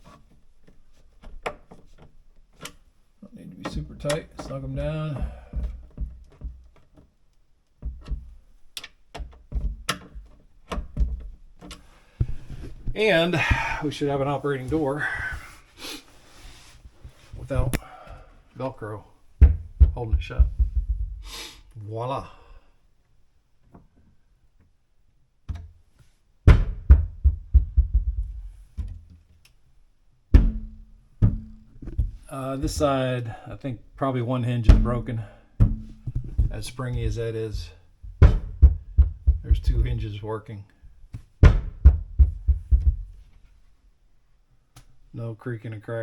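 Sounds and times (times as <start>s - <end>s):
low thump: 19.4s - 21.3s, 26.5s - 29.0s, 30.3s - 32.9s, 34.7s - 40.1s, 41.4s - 43.2s
wooden cabinet door knocking: 19.4s - 21.3s, 26.5s - 29.1s, 30.4s - 32.8s, 34.7s - 40.0s, 41.4s - 43.2s.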